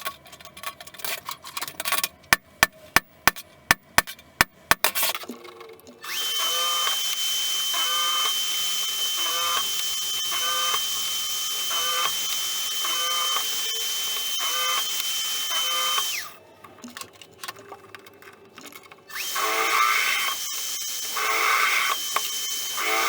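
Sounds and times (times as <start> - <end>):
power tool high whine: 6.0 - 16.4, 19.1 - 23.0.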